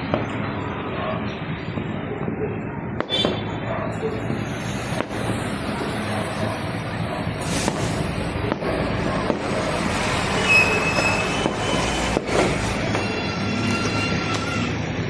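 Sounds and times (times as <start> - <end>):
fireworks bangs: 1.6 - 14.8
dense background din: 3.2 - 15.0
high whistle: 10.4 - 12.2.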